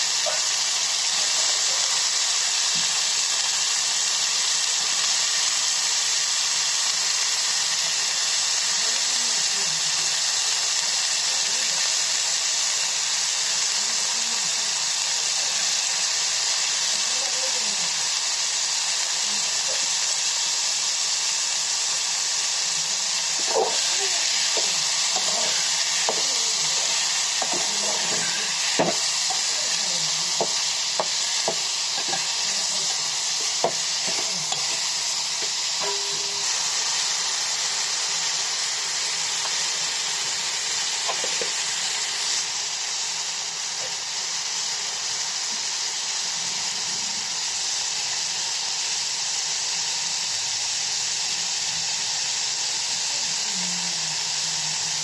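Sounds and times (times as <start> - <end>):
food sizzling in hot oil: 0.0 - 55.0
spatula knocking against pan: 28.8 - 29.4, 30.4 - 32.2.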